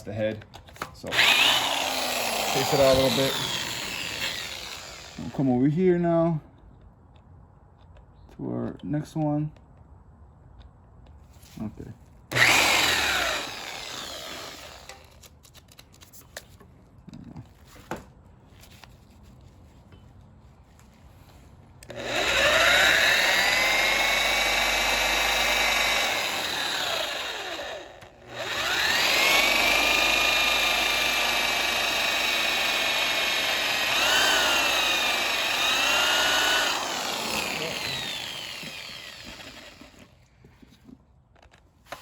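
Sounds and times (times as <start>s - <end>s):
electric drill whining: 1.1s - 5.5s, 12.3s - 15.2s, 21.8s - 40.2s.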